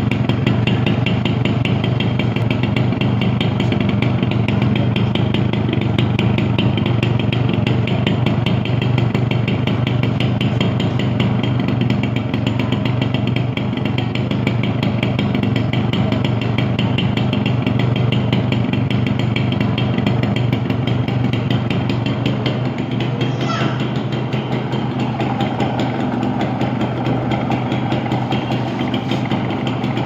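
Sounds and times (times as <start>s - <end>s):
two-stroke engine running: 0.0s - 30.0s.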